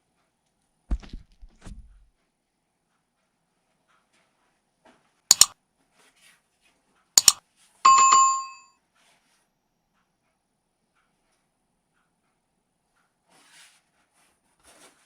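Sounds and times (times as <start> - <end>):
sharp double clicks: 5.3 - 5.5, 7.2 - 8.6
metallic bell-like ring: 7.9 - 8.6.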